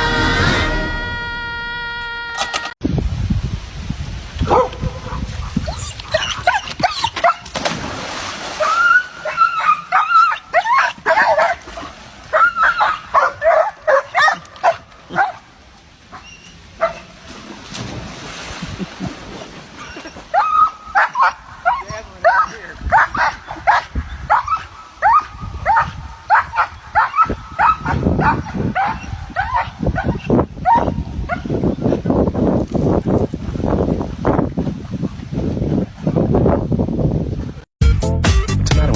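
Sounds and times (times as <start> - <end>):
dog whining and yipping: 5.7 - 7.4.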